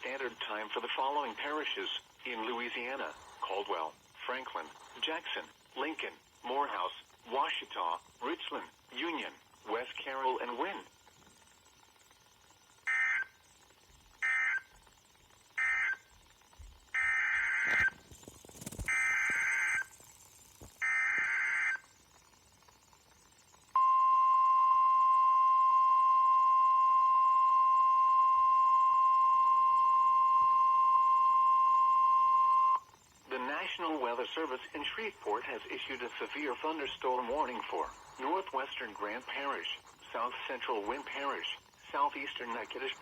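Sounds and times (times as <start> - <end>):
steady warning alarm tone: 0.0 - 22.3, 23.4 - 43.0
raspy digital data bursts: 0.0 - 23.8, 32.9 - 43.0.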